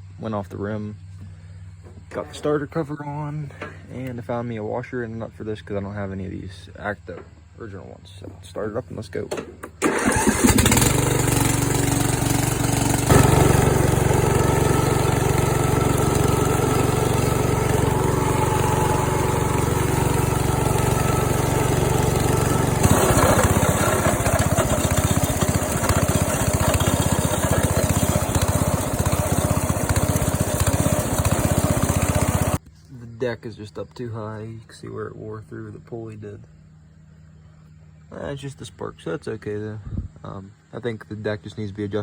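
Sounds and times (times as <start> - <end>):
riding mower engine running: 9.2 - 32.6.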